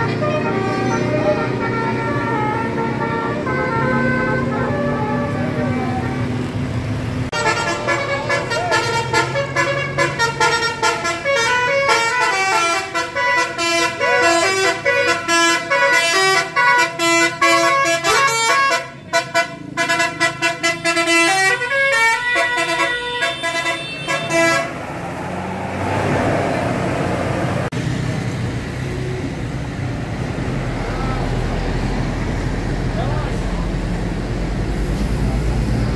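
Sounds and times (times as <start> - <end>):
musical bus horn playing tune: 0.0 - 6.5, 7.3 - 24.8
traffic noise: 0.0 - 35.9.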